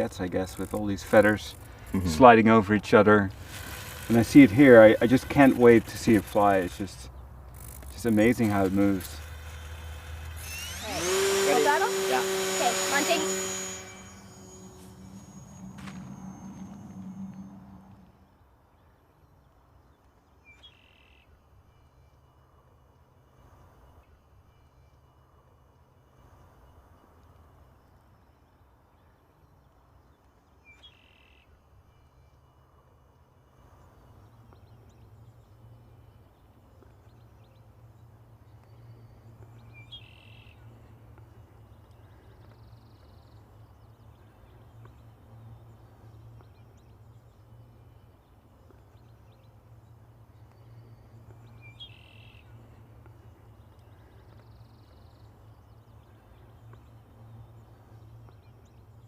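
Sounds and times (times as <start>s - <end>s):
steady low hum: 0.0s - 18.4s.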